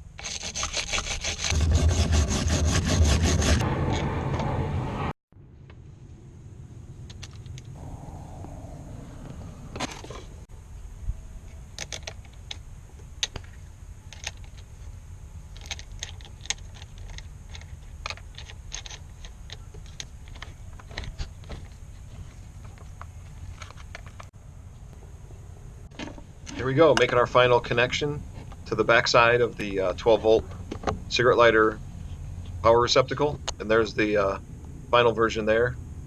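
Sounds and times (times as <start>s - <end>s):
steady low rumble: 3.5s - 11.8s, 24.3s - 36.0s
small metal parts and tools clicking: 11.8s - 12.6s, 13.2s - 14.8s, 15.5s - 21.7s.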